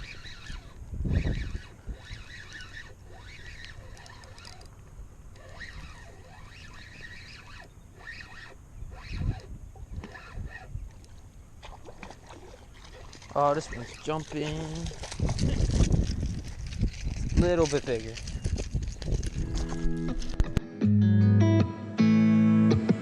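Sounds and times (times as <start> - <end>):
birds chirping: 0.0 - 15.0
low thumps of wind or handling: 0.0 - 20.7.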